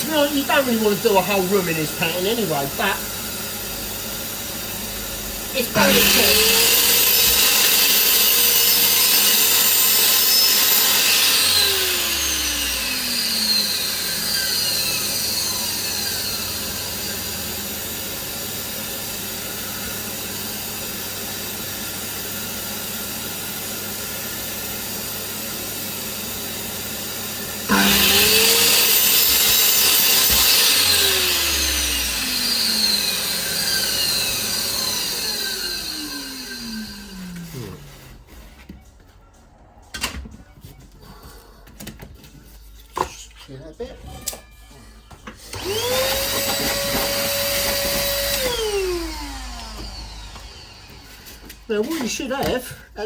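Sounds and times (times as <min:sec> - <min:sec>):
mitre saw cutting tiles: 0:05.4 - 0:38.5, 0:45.4 - 0:52.9
saw blade spinning down: 0:05.6 - 0:17.0, 0:27.7 - 0:38.0, 0:45.5 - 0:52.2.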